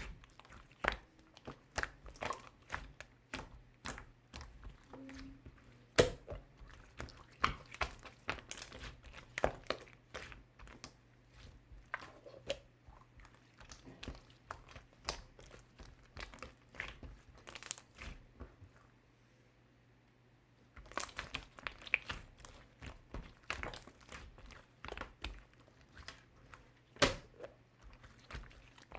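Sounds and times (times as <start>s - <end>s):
slime squishing with pops: 0.0s - 18.7s, 20.7s - 28.9s.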